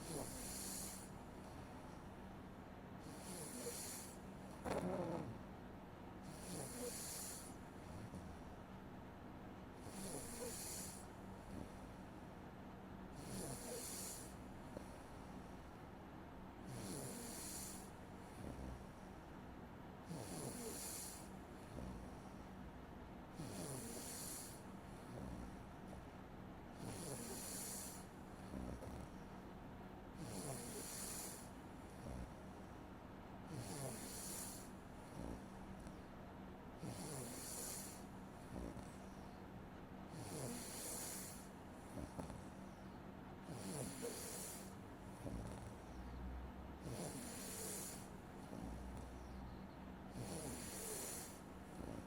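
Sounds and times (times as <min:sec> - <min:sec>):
person snoring: 0:00.0 - 0:01.7, 0:03.0 - 0:05.4, 0:06.3 - 0:08.2, 0:09.8 - 0:11.9, 0:13.2 - 0:15.0, 0:16.7 - 0:18.9, 0:20.1 - 0:22.2, 0:23.4 - 0:25.6, 0:26.8 - 0:29.1, 0:30.2 - 0:32.4, 0:33.5 - 0:35.9, 0:36.8 - 0:39.0, 0:40.1 - 0:42.5, 0:43.5 - 0:46.0, 0:46.8 - 0:49.4, 0:50.1 - 0:52.0.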